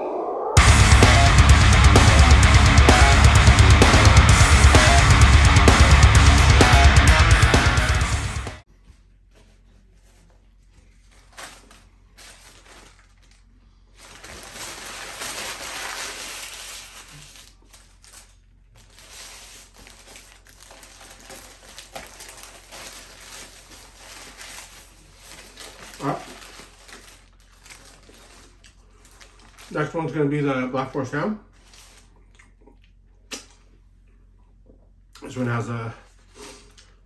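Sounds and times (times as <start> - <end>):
food wrapper crinkling: 11.1 - 30.2, 31.5 - 32.6.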